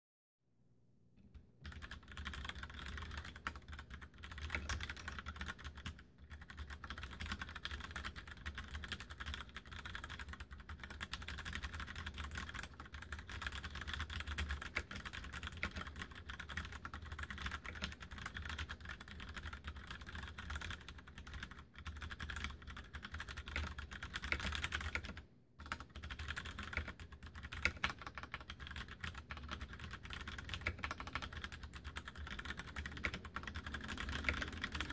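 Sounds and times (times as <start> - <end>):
fast typing on mechanical keyboard: 1.6 - 34.9.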